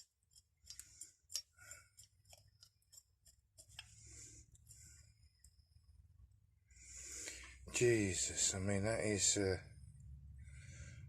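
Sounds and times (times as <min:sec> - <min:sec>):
metal wrench clicks and rubbing: 0:00.0 - 0:03.9.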